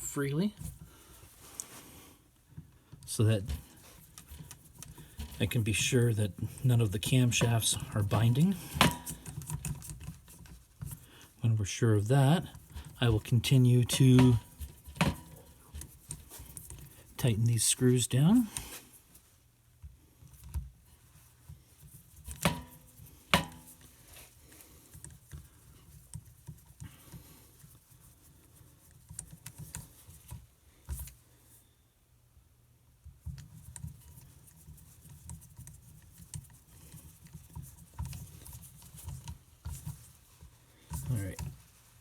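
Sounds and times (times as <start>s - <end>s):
dull knocks and tool scrapes: 12.5s - 17.3s.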